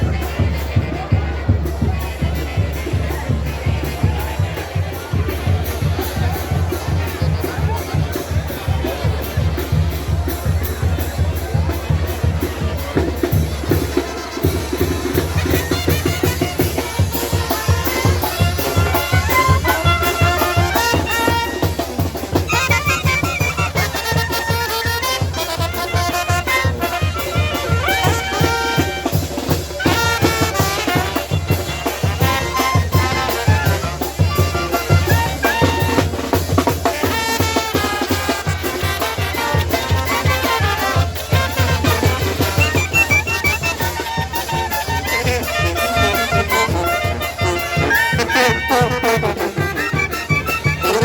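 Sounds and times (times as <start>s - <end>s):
band with fast drum beat: 0.0s - 51.0s
brass and clarinet melody: 13.2s - 51.0s.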